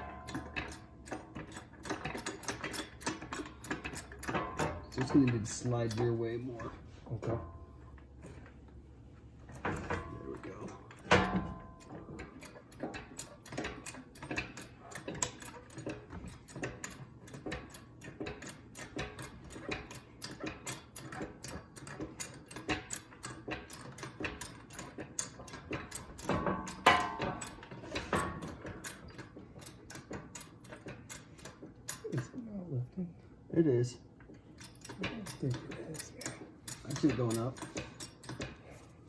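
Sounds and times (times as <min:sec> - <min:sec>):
jack clicking and rattling: 0:00.0 - 0:32.4, 0:33.6 - 0:39.0.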